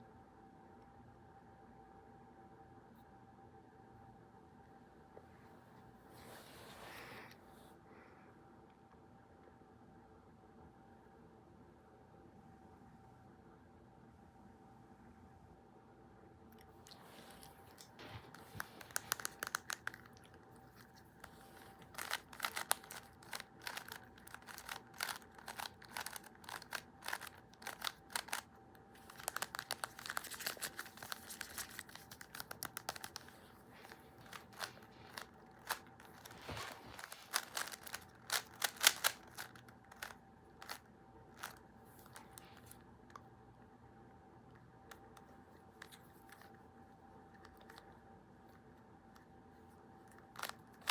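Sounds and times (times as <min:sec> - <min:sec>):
faint hum: 0:00.0 - 0:50.9
crinkling and crumpling: 0:16.6 - 0:43.2, 0:44.9 - 0:46.6, 0:49.2 - 0:50.9.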